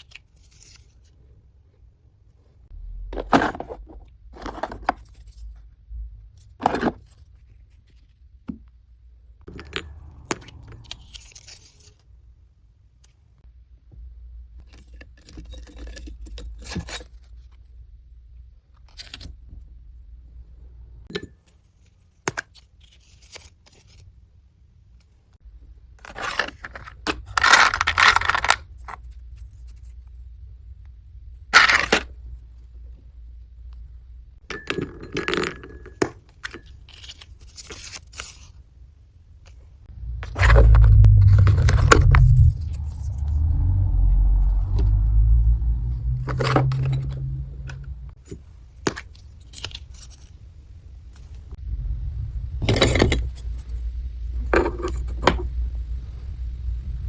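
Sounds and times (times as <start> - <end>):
low rumbling handling noise: 2.7 - 6.9, 9.4 - 11.2, 39.9 - 48.2, 51.2 - 57.0
packaging rustling and scraping: 3.2 - 5.6, 26.0 - 30.0, 36.7 - 38.6.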